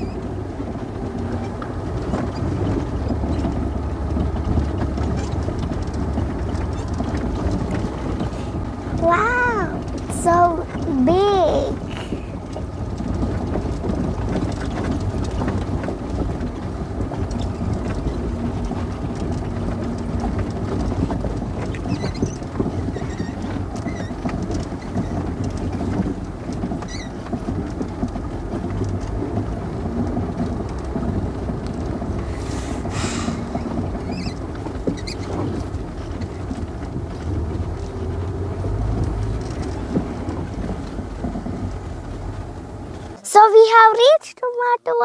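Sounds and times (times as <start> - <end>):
rattles and knocks: 0.0 - 43.2
car engine and tyres rumbling: 0.0 - 44.0.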